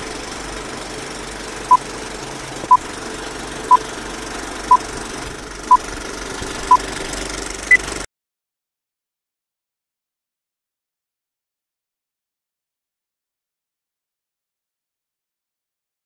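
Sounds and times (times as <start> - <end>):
steady whirring hum: 0.0 - 8.0.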